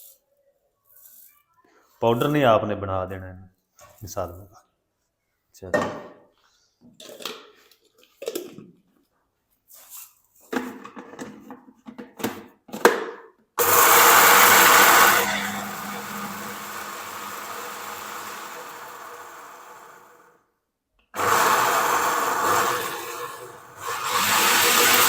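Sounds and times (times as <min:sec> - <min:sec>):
mixer grinder motor grinding spices: 0:13.6 - 0:20.3, 0:21.2 - 0:25.0.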